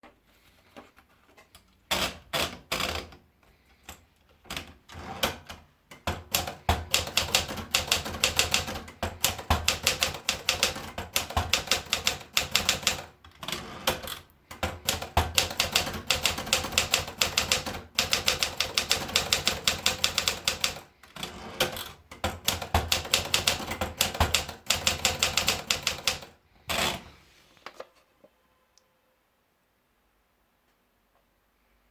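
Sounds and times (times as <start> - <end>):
manual typewriter keystrokes: 3.8 - 27.0.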